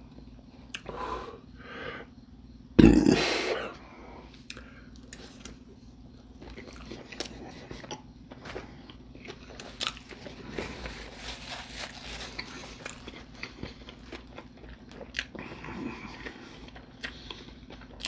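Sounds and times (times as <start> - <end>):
faint steady hum: 0.0 - 18.0
mouth chewing food: 4.3 - 18.0.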